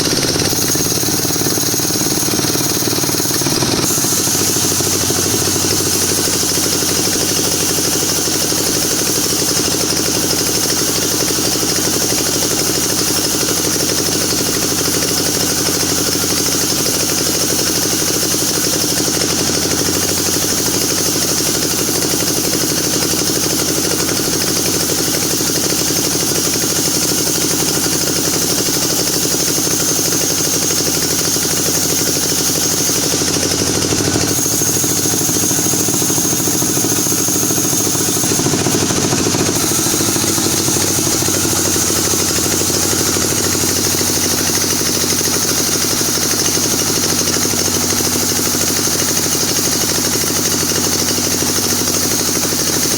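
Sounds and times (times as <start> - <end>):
engine-driven saw cutting wood: 0.0 - 52.9.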